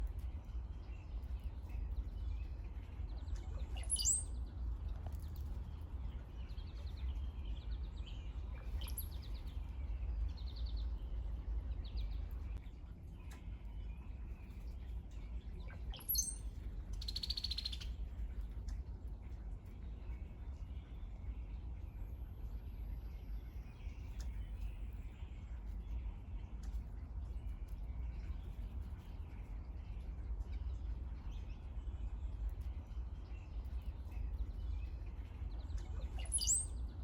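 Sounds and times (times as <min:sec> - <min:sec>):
bird gurgling song with whistle: 0:03.6 - 0:04.3, 0:15.7 - 0:17.9, 0:36.0 - 0:36.8.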